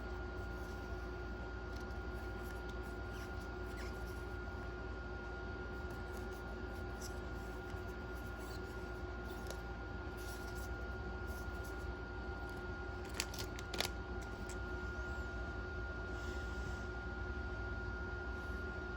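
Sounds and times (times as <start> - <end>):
paper and card rustling: 0.0 - 4.7, 5.7 - 14.6
steady hum with faint whine: 0.0 - 18.9.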